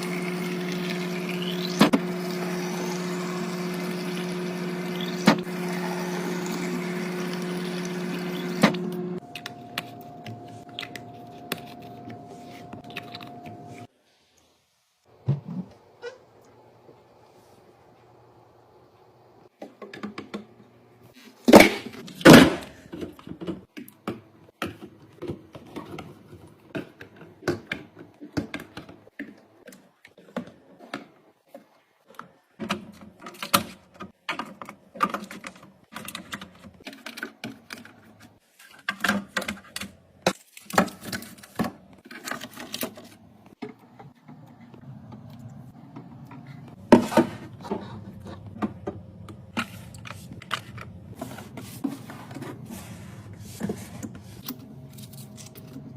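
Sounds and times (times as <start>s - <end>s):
objects handled and set down: 34.1s - 55.9s.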